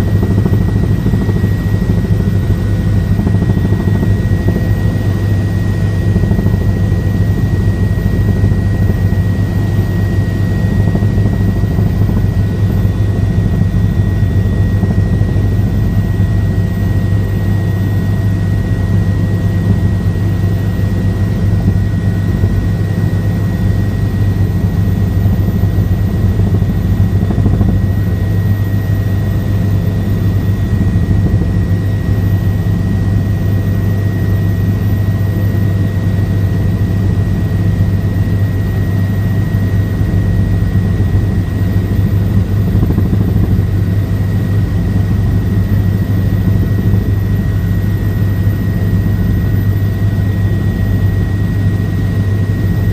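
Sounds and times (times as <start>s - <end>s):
helicopter rotor and engine drone: 0.0s - 52.9s
thin high whine: 36.5s - 52.9s.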